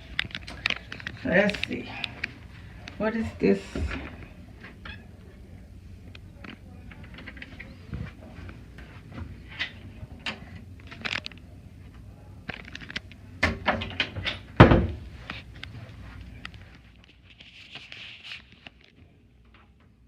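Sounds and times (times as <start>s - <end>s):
clicks and knocks of handling: 0.0s - 3.0s, 6.1s - 11.5s, 12.5s - 15.8s.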